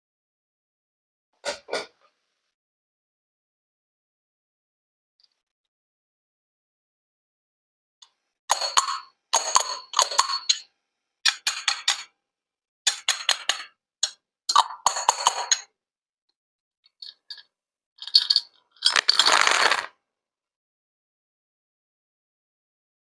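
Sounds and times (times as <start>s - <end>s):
small hard objects clinking: 18.0s - 19.9s.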